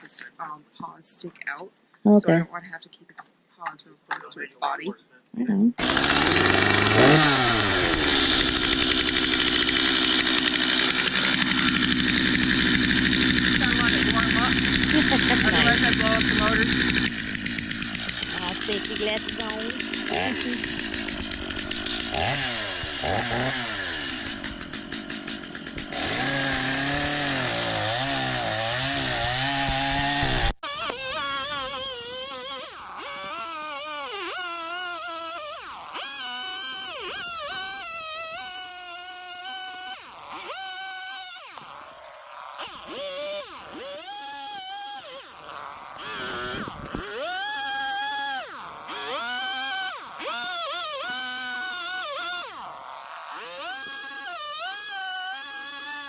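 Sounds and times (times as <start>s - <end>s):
chainsaw revving while cutting wood: 5.8s - 56.0s.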